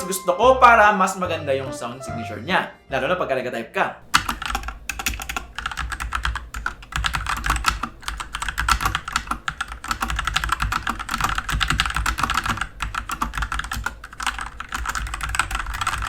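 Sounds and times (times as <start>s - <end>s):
fast typing on mechanical keyboard: 4.1s - 16.0s.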